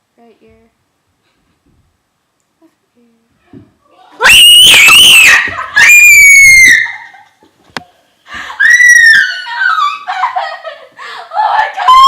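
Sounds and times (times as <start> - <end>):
shrill screaming: 4.2 - 7.2, 8.4 - 10.1, 11.4 - 12.0.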